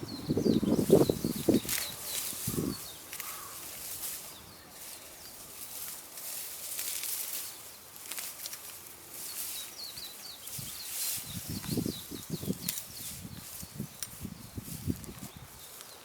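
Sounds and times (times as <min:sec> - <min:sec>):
bird chirps: 0:00.0 - 0:05.4, 0:09.2 - 0:14.6
grass being cut by hand: 0:00.8 - 0:15.6.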